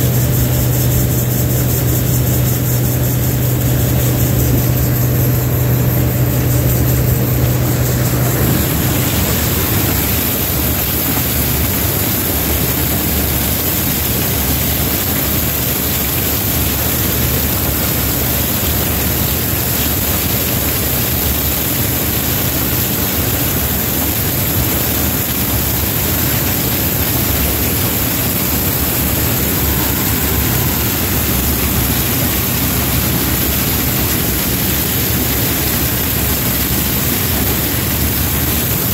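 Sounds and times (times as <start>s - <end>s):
strong low hum: 0.0s - 11.8s, 27.3s - 38.0s
combine harvester running: 0.0s - 38.9s.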